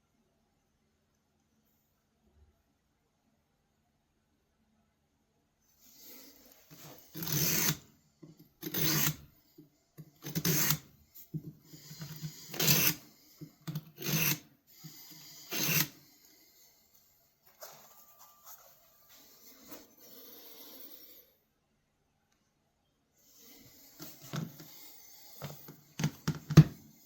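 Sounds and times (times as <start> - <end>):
knife blade rasping on abrasive: 6.8 - 7.8, 8.6 - 9.2, 10.2 - 10.8, 11.7 - 13.0, 13.8 - 16.0.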